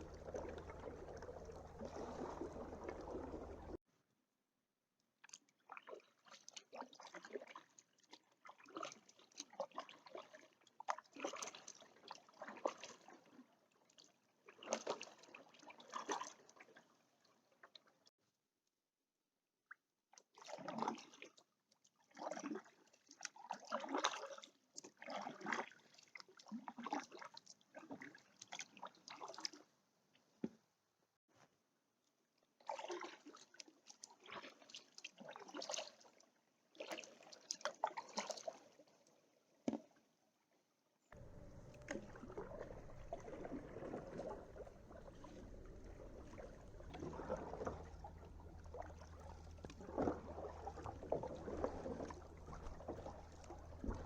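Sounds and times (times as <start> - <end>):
paddle strokes splashing in water: 0.0 - 3.8, 32.6 - 38.8, 41.2 - 54.0
steady low rumble: 0.0 - 3.8, 41.2 - 54.0.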